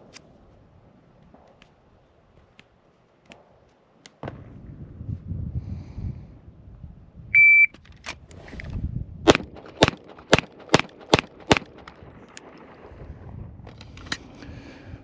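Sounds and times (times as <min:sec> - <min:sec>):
shot timer beep: 0:07.4 - 0:07.7
rapid pistol shots: 0:09.3 - 0:13.1.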